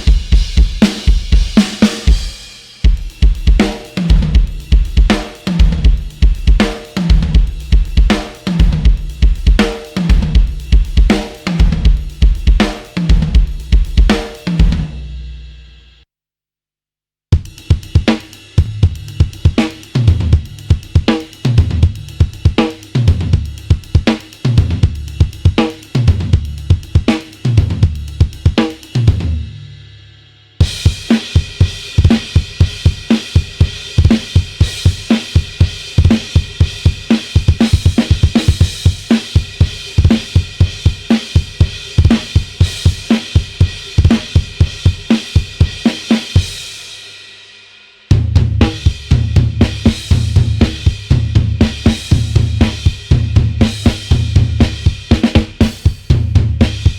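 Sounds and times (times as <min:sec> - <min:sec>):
acoustic drum kit rock grooves: 0:00.0 - 0:15.1, 0:17.3 - 0:29.7, 0:30.6 - 0:47.5, 0:48.1 - 0:56.9
heavy booming low drum hits: 0:48.1 - 0:56.9.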